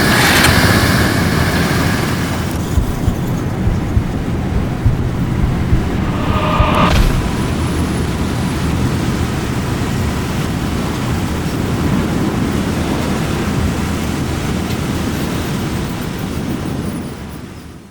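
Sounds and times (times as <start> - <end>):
low rumbling noise: 2.4 - 11.0.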